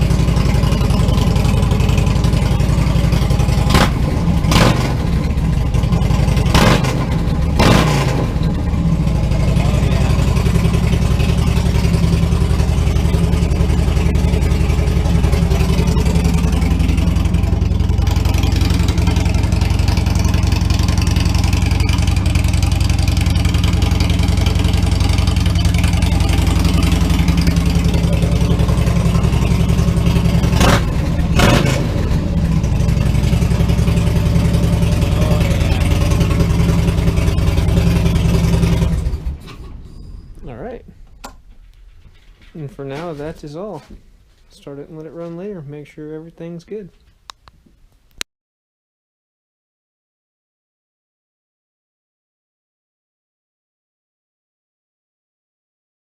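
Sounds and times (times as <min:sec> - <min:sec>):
motorcycle engine idling and revving: 0:00.0 - 0:44.1.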